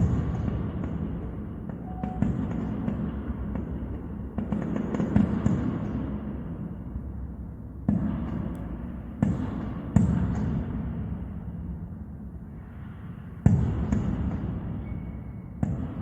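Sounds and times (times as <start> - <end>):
loud fireworks booms: 0.0 - 6.4.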